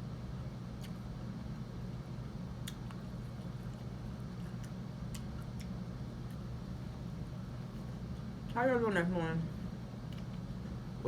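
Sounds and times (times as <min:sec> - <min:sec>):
person eating with crunchy clicks: 0:00.6 - 0:01.7, 0:02.5 - 0:06.9, 0:10.0 - 0:10.5.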